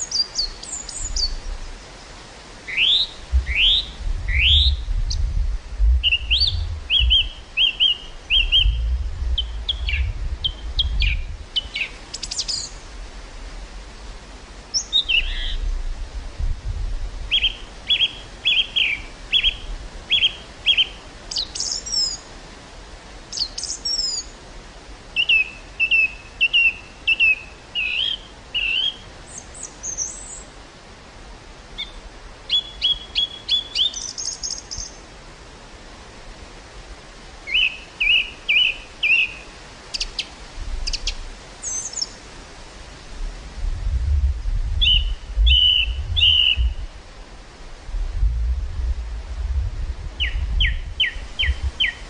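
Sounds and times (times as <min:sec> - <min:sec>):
birds chirping and whistling: 0:00.0 - 0:01.4, 0:02.7 - 0:05.2, 0:06.0 - 0:12.8, 0:14.7 - 0:15.6, 0:17.3 - 0:22.2, 0:23.4 - 0:24.3, 0:25.2 - 0:30.4, 0:31.8 - 0:35.0, 0:37.5 - 0:39.4, 0:40.0 - 0:42.2, 0:44.8 - 0:46.8, 0:50.2 - 0:52.0
wind gusts rumbling: 0:02.5 - 0:12.1, 0:12.8 - 0:18.4, 0:42.4 - 0:52.0.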